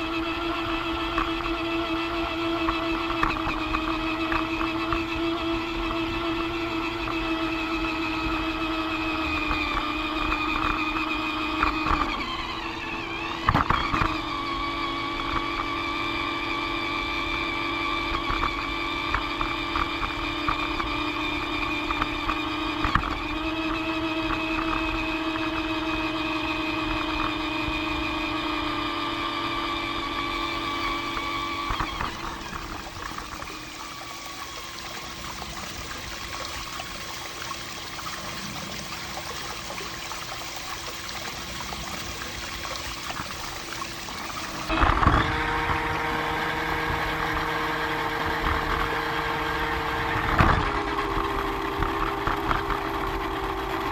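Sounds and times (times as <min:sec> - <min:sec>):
fountain water trickling: 0:00.0 - 0:12.1, 0:30.4 - 0:44.7.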